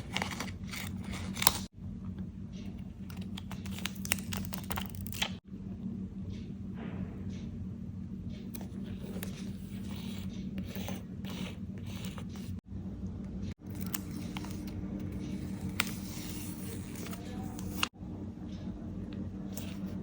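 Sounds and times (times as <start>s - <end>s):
paper rustling and scraping: 0.0s - 1.7s, 13.7s - 17.9s.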